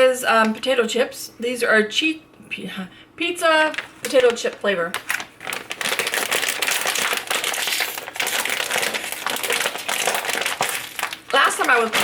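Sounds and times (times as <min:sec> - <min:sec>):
plastic bag crumpling: 0:03.7 - 0:12.0.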